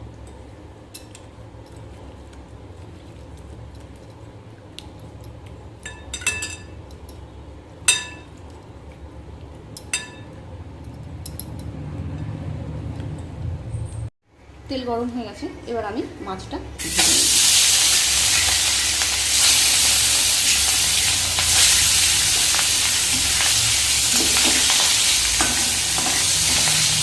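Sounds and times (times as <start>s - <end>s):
dishes and utensils clinking: 5.8s - 6.8s, 7.9s - 8.3s, 9.8s - 10.4s, 24.1s - 27.0s.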